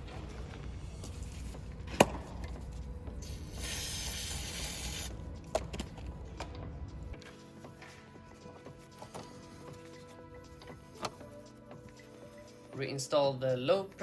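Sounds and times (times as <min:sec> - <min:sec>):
degreaser spray hissing: 0:03.5 - 0:05.1.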